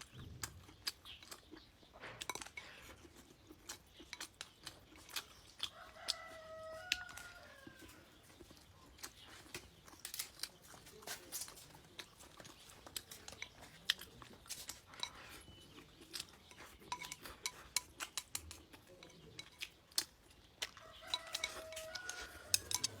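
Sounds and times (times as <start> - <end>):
chewing: 0.0 - 23.0
utensils clinking on dishes: 14.5 - 20.1, 20.7 - 23.0.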